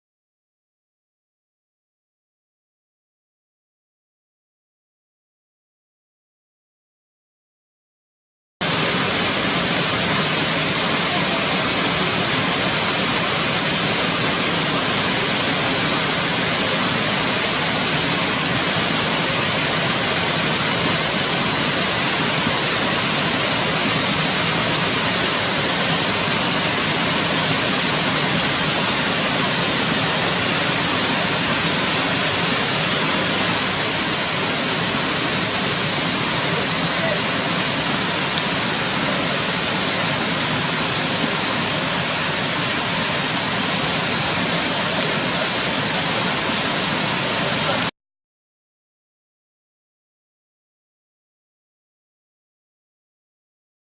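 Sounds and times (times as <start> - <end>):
waterfall rushing: 8.6 - 47.9.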